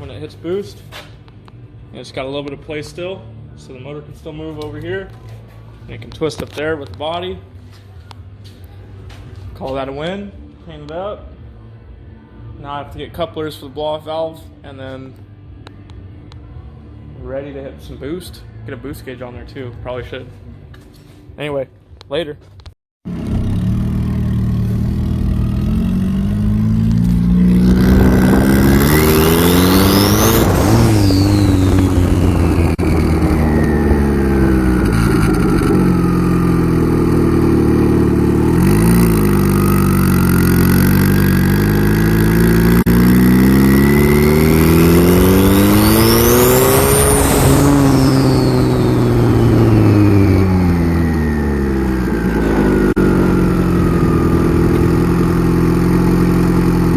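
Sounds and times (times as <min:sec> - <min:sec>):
car engine accelerating: 0:23.1 - 0:56.9
turbo whine: 0:23.2 - 0:56.9.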